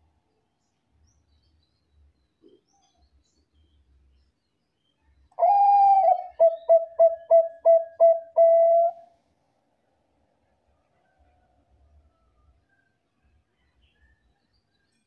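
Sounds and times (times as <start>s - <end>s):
dove cooing: 5.4s - 9.0s.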